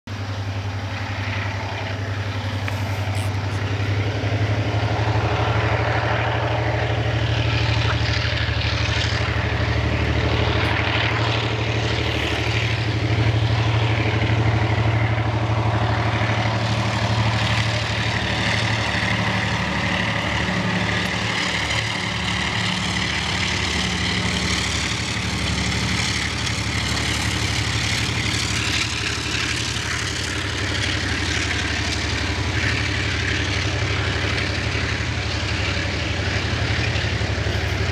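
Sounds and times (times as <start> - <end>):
train engine drone and rattling: 0.0 - 37.9
frogs calling: 1.3 - 4.0.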